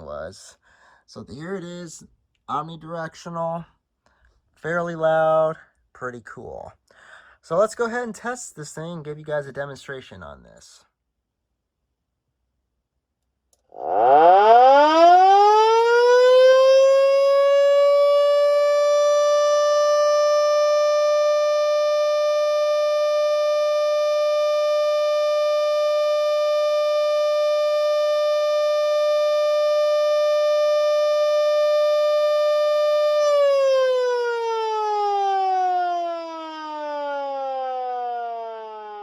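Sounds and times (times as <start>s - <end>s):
single-tone siren: 13.7s - 39.0s.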